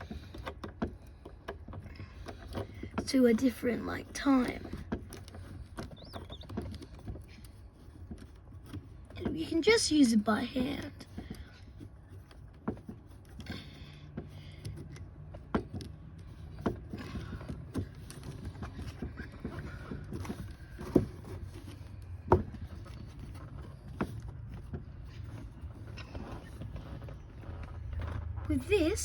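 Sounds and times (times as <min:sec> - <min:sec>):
low steady hum: 0:00.0 - 0:29.0.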